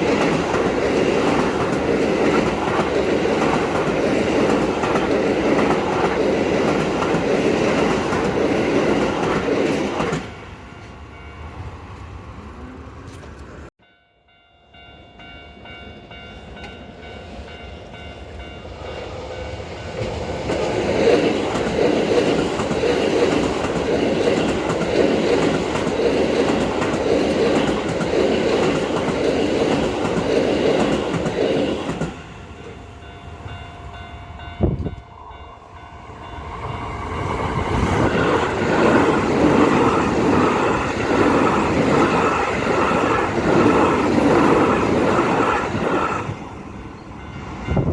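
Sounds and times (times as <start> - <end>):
electric trains passing: 0.0 - 13.7, 14.3 - 47.9.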